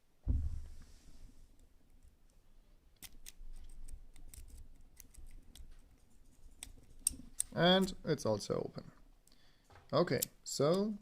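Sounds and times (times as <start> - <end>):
lock pins clicking: 2.9 - 5.7, 7.0 - 8.0.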